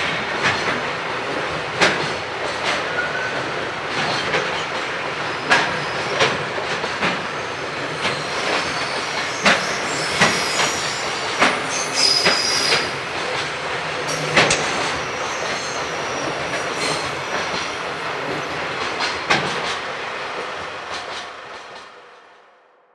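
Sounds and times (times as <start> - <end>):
train wheel squeal: 2.6 - 19.6.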